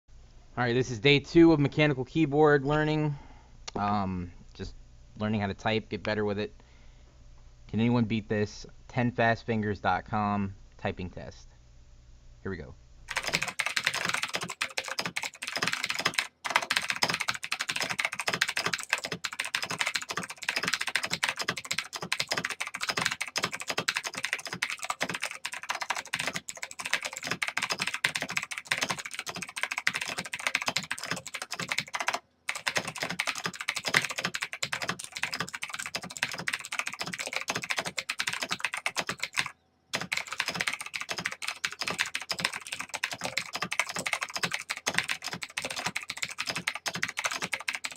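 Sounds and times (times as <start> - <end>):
fast typing on mechanical keyboard: 13.1 - 47.9.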